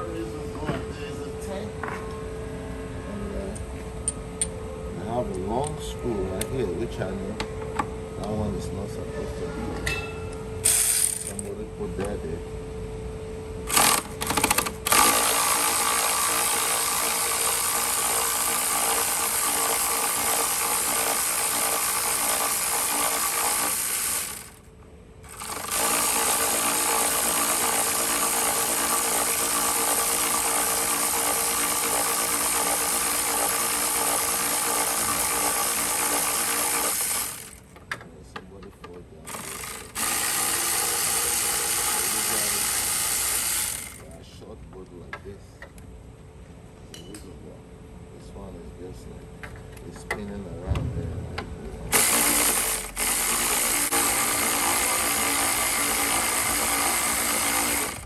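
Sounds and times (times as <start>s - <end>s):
cordless power tool running: 10.6s - 11.5s, 13.7s - 37.7s, 39.3s - 44.1s, 51.9s - 58.0s.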